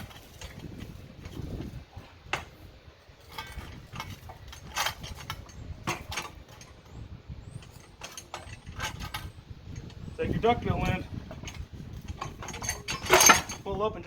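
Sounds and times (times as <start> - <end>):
metal bar clanking: 3.2 - 10.1, 10.7 - 13.8.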